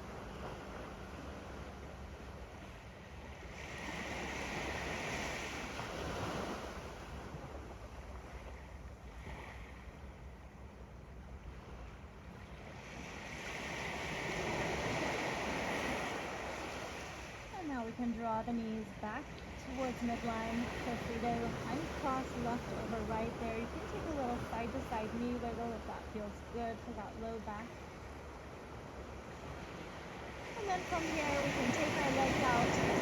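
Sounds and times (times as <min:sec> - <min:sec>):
ocean waves on sandy beach: 0:00.0 - 0:33.0.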